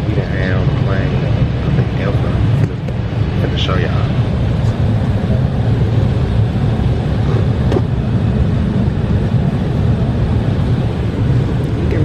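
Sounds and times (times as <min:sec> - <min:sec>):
airliner cabin rumble: 0:00.0 - 0:12.0.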